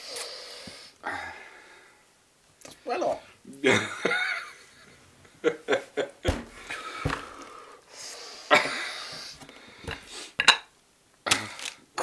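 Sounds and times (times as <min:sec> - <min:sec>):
long hissing breath: 0:00.0 - 0:02.0.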